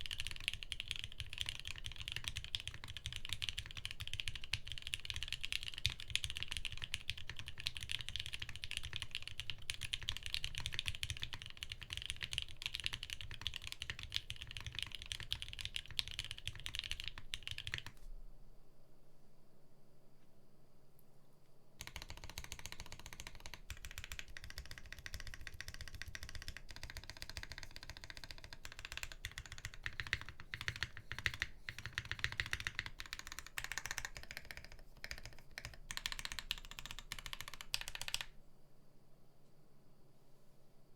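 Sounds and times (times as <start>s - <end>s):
mechanical keyboard typing: 0.0s - 18.0s, 21.8s - 38.3s.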